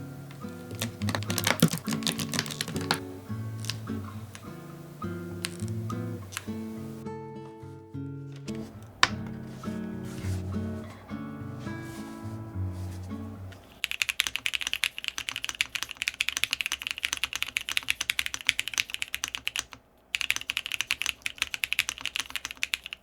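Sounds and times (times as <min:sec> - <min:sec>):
music: 0:00.0 - 0:13.6
fast typing on mechanical keyboard: 0:00.7 - 0:03.0, 0:13.8 - 0:23.0.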